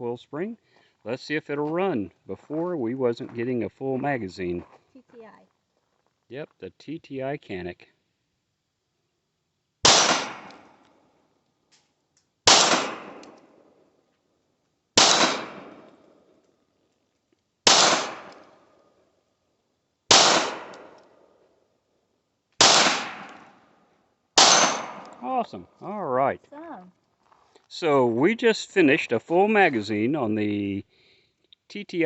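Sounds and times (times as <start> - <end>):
pistol shots: 9.8 - 10.7, 12.5 - 13.5, 15.0 - 15.9, 17.6 - 18.4, 20.1 - 21.0, 22.6 - 23.6, 24.4 - 25.2.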